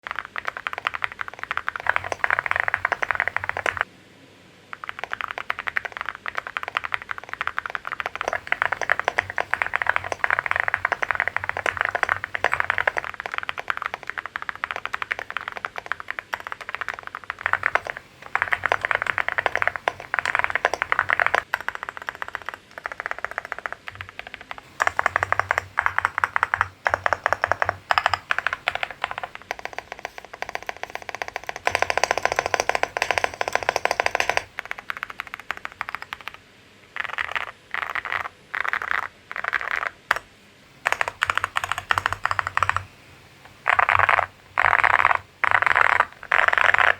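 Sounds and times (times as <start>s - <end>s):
mechanical keyboard typing: 0.0s - 3.9s, 4.7s - 40.2s, 40.8s - 42.9s, 43.5s - 46.9s.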